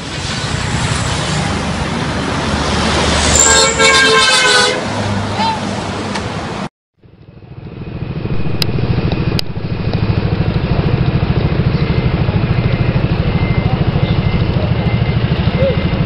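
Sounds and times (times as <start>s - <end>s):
vehicle engine idling: 7.0s - 16.0s.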